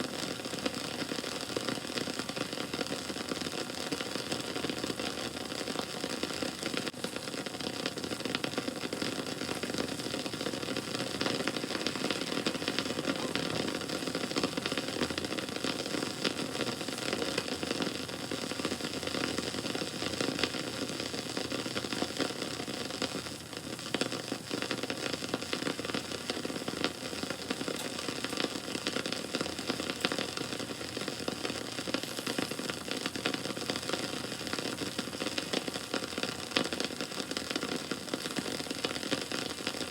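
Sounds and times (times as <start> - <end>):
campfire crackling: 0.0 - 39.9
rush of flames: 8.3 - 20.0.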